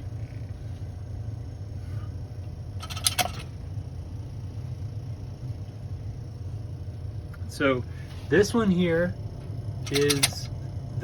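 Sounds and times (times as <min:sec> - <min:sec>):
sharp metallic clicks: 0:02.8 - 0:03.5, 0:09.8 - 0:10.5.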